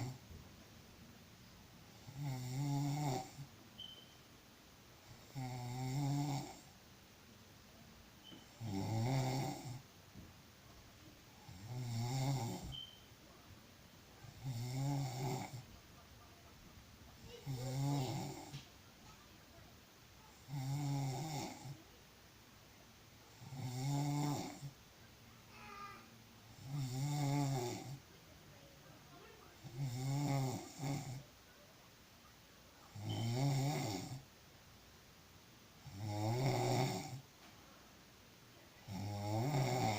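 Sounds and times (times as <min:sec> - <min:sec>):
person snoring: 0:00.0 - 0:00.2, 0:01.9 - 0:03.5, 0:05.1 - 0:06.7, 0:08.5 - 0:09.8, 0:11.4 - 0:12.8, 0:14.3 - 0:15.6, 0:17.4 - 0:18.6, 0:20.4 - 0:21.8, 0:23.3 - 0:24.7, 0:26.5 - 0:28.0, 0:29.6 - 0:31.2, 0:32.9 - 0:34.2, 0:35.8 - 0:37.2, 0:38.8 - 0:39.9.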